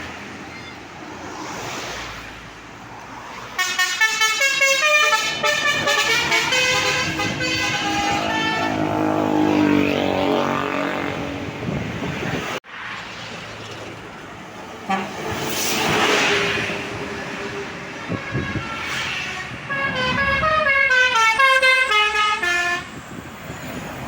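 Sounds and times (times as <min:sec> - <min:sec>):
traffic noise: 0:00.0 - 0:24.0
bus musical horn playing tune: 0:03.6 - 0:09.8, 0:14.9 - 0:15.3, 0:18.1 - 0:23.1.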